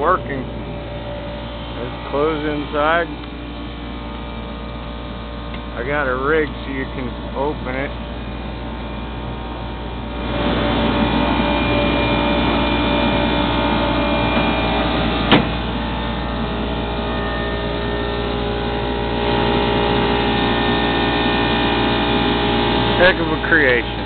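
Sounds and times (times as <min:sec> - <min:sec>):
clothes dryer humming: 0:00.0 - 0:24.0.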